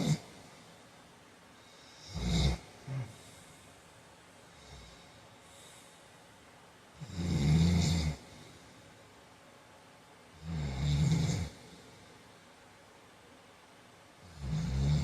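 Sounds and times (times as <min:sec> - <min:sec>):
man snoring: 0:00.0 - 0:00.4, 0:01.7 - 0:03.2, 0:04.6 - 0:05.1, 0:07.0 - 0:08.4, 0:10.4 - 0:11.8, 0:14.2 - 0:15.0
snort: 0:00.0 - 0:00.4, 0:01.7 - 0:03.6, 0:07.0 - 0:08.5, 0:10.4 - 0:12.0, 0:14.2 - 0:15.0.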